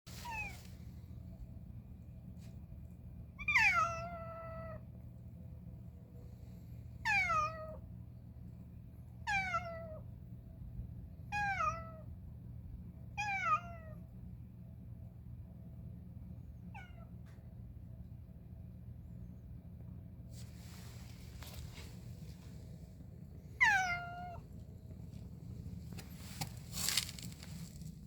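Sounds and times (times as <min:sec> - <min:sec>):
cat meowing: 0:00.2 - 0:00.6, 0:03.4 - 0:04.8, 0:07.0 - 0:07.8, 0:09.2 - 0:10.0, 0:11.3 - 0:12.0, 0:13.2 - 0:14.0, 0:23.6 - 0:24.6.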